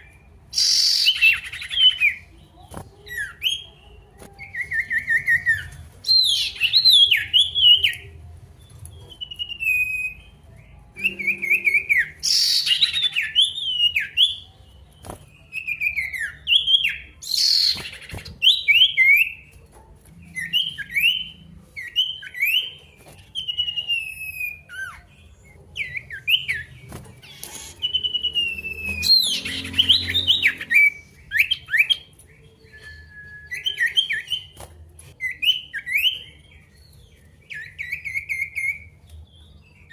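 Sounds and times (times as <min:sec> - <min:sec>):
bird harsh raspy notes: 0:11.0 - 0:13.9, 0:27.2 - 0:31.9
songbird whistled phrases: 0:11.0 - 0:14.5, 0:32.6 - 0:34.6.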